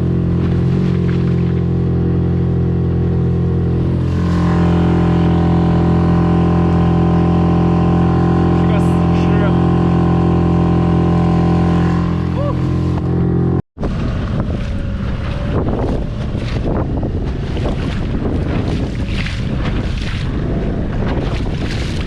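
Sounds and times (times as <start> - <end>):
choppy water: 0.0 - 22.0
outboard motor running: 0.0 - 22.0
wind buffeting microphone: 13.8 - 22.0.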